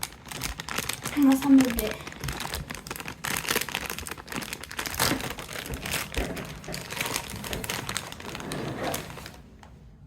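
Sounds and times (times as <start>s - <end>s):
plastic bag crinkling: 0.0s - 9.6s.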